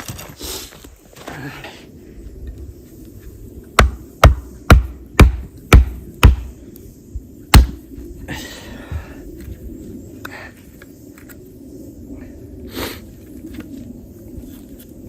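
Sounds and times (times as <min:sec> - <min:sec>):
chopping strikes into log: 0:03.8 - 0:06.5, 0:07.5 - 0:07.8.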